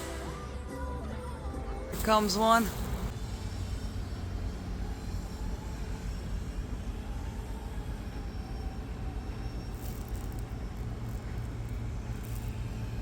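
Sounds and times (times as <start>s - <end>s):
drone propeller hum: 0.0s - 13.0s
steady low rumble: 0.0s - 13.0s.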